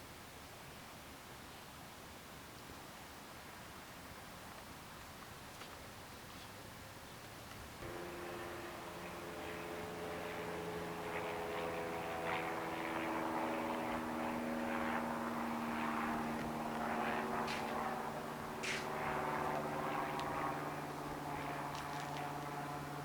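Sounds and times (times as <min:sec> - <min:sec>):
engine-like drone: 0:07.8 - 0:23.0.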